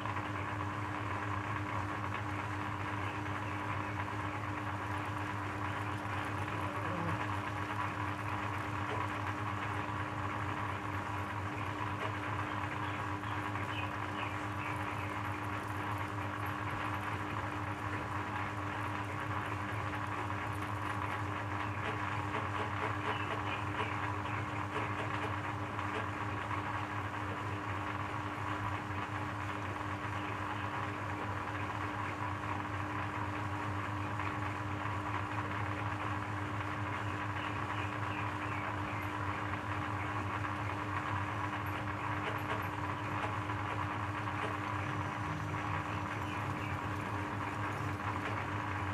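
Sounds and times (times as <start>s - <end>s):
electric shredder motor humming: 42.0s - 48.9s.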